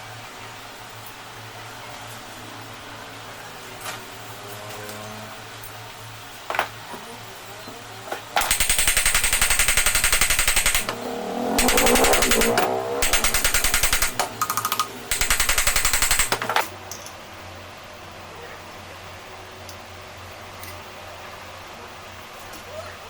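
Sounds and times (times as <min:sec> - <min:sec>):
power tool hammering rattle: 0:08.3 - 0:16.8
sharp clicks: 0:08.4 - 0:16.5.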